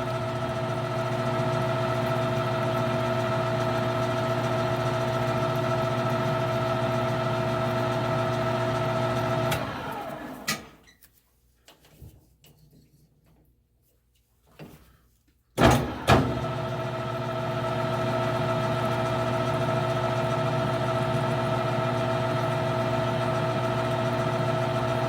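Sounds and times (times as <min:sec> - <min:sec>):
lathe motor humming: 0:00.0 - 0:10.4, 0:15.9 - 0:25.0.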